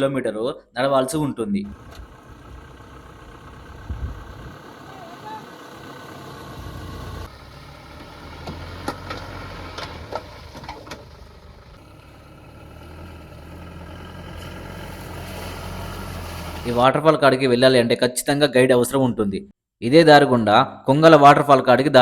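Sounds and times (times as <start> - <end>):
vehicle engine running: 1.7 - 16.8.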